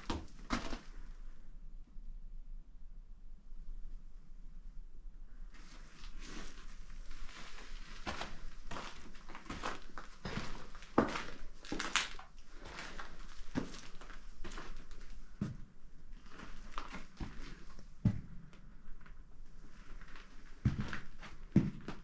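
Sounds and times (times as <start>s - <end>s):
footsteps crunching and knocking: 6.0s - 15.7s, 20.1s - 22.0s.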